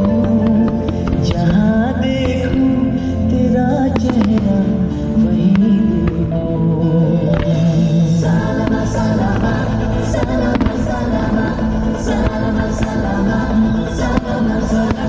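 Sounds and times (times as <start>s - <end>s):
song with singing over a beat: 0.0s - 15.0s
firework bangs: 8.4s - 15.0s.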